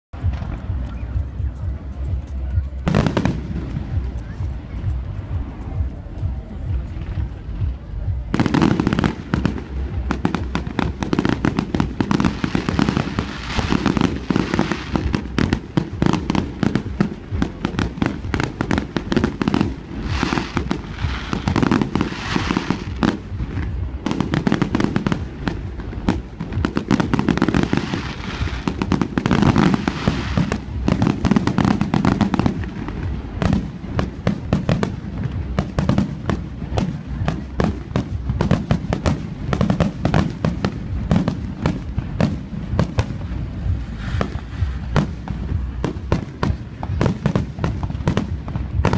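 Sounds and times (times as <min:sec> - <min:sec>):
fireworks booming: 0:00.2 - 0:48.9.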